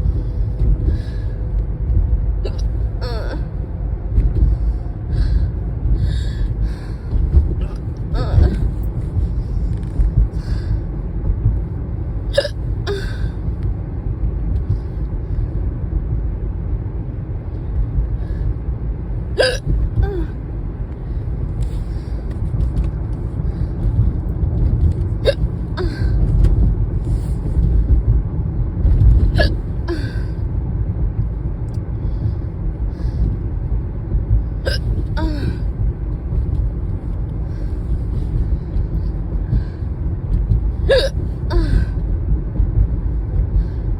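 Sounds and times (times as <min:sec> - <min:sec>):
car cabin rumble: 0:00.0 - 0:43.9
person hiccuping: 0:12.4 - 0:13.1, 0:19.4 - 0:20.3, 0:25.2 - 0:25.5, 0:29.4 - 0:30.1, 0:34.7 - 0:35.6, 0:40.9 - 0:41.8.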